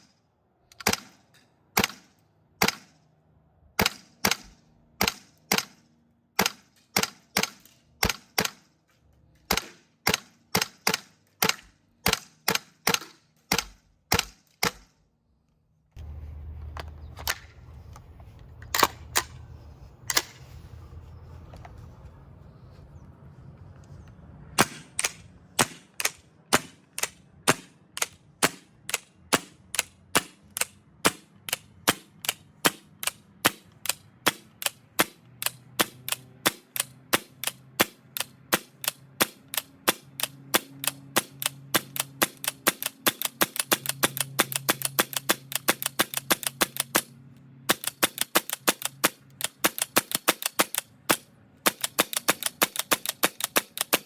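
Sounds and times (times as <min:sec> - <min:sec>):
airsoft rifle shots: 0:00.7 - 0:03.0, 0:03.8 - 0:05.8, 0:06.4 - 0:08.8, 0:09.4 - 0:15.0, 0:24.6 - 0:47.1, 0:47.7 - 0:54.0
bolt blowback clack: 0:09.4 - 0:14.9, 0:24.6 - 0:47.1, 0:47.7 - 0:54.0.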